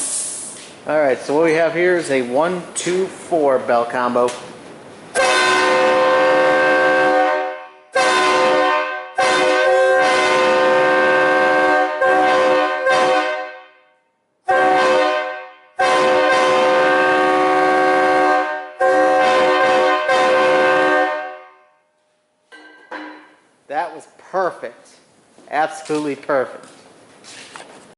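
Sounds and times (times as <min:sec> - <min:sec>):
train air horn chord blasts: 0:05.2 - 0:21.9.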